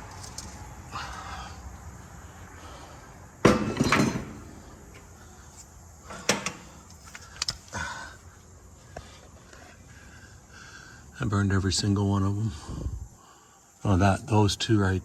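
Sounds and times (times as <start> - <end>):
objects knocking and clunking: 3.4 - 5.1, 6.1 - 7.0.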